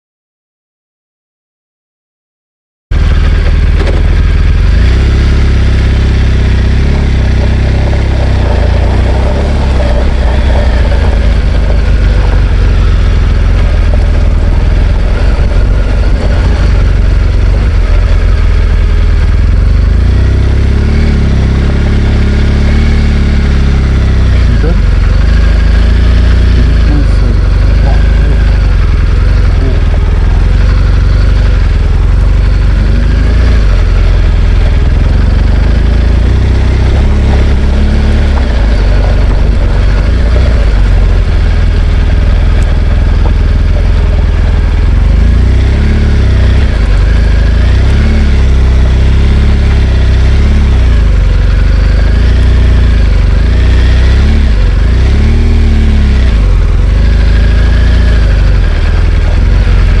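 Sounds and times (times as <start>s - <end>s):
motorcycle engine revving: 2.9s - 60.0s
wind rumble on camera: 23.8s - 45.5s.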